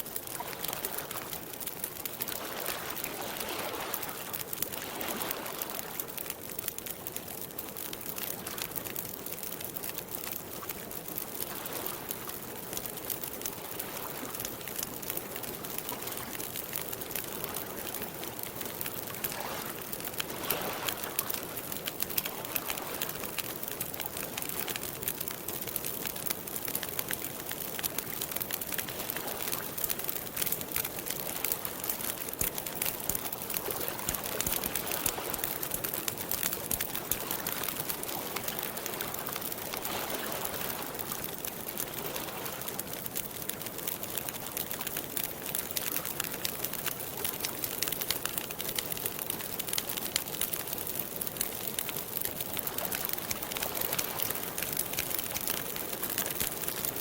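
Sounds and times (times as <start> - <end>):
campfire crackling and popping: 0.0 - 57.0
lake water lapping: 0.3 - 6.1, 19.2 - 23.3, 32.8 - 41.1.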